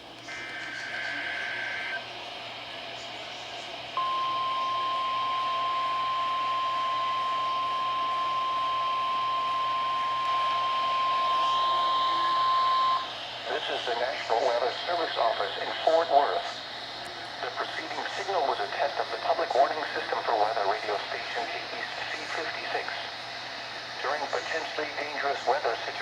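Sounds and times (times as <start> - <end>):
radio hiss: 0.0 - 26.0
steady alarm tone: 4.0 - 17.0.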